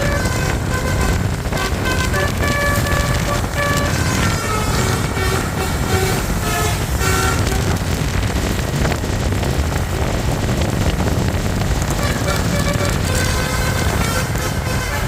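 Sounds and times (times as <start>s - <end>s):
musical bus horn: 0.0s - 8.5s, 11.8s - 15.0s
engine and road noise: 0.0s - 15.0s.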